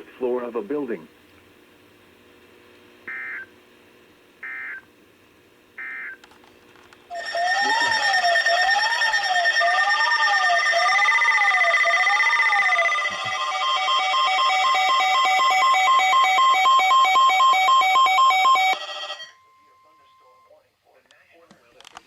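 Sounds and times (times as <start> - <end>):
warbling electronic alert tone: 7.1 - 19.3
digital data bursts: 7.2 - 17.2.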